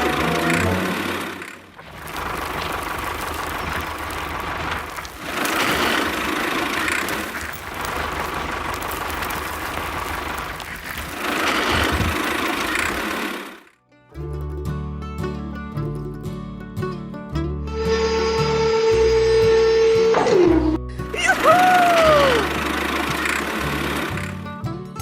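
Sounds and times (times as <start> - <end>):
vehicle engine running: 0.0 - 13.7, 19.7 - 24.7.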